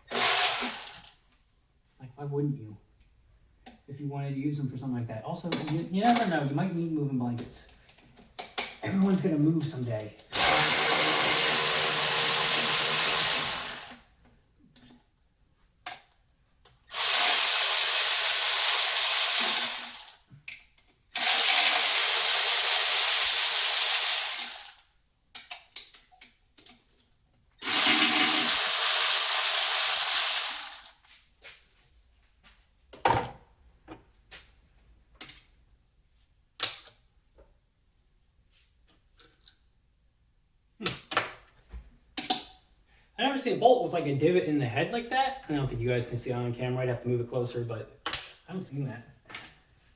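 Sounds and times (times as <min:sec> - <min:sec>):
power tool spinning bolts: 0:00.0 - 0:01.1, 0:10.2 - 0:14.0, 0:16.9 - 0:20.2, 0:21.2 - 0:24.8, 0:27.6 - 0:31.0
small clicks and taps of tools: 0:25.3 - 0:27.1, 0:35.1 - 0:35.5.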